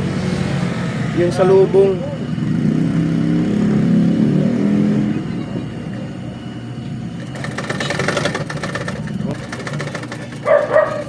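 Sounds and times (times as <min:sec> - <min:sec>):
vehicle engine running: 0:00.0 - 0:11.0
rapid rattling buzz: 0:07.0 - 0:11.0.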